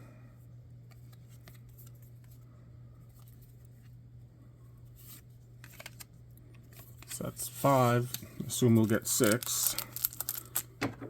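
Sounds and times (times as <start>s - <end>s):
low electrical hum: 0.0s - 11.0s
cards clicking and sliding: 5.6s - 6.1s.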